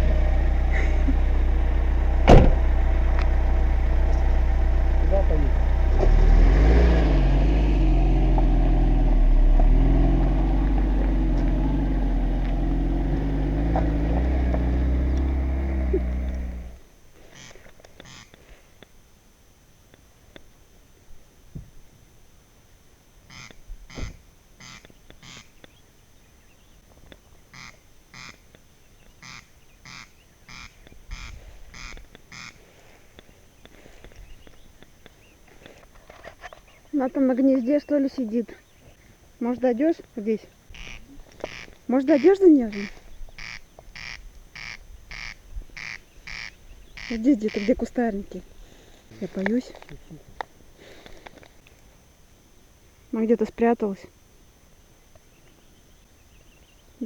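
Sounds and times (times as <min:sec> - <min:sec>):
car engine running: 0:00.0 - 0:16.8
bird harsh rasping call: 0:17.4 - 0:18.4, 0:23.3 - 0:25.6, 0:27.5 - 0:28.4, 0:29.2 - 0:32.7, 0:40.7 - 0:47.9.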